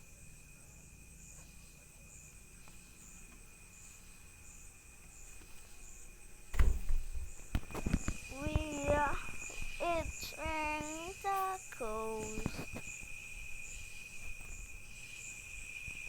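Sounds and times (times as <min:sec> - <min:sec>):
faint high-pitched whine: 0:00.0 - 0:16.0
loud thump: 0:06.5 - 0:08.1.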